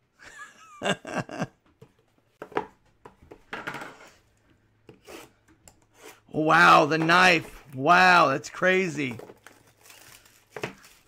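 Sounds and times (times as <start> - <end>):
plastic and cardboard rustling: 8.7 - 11.0.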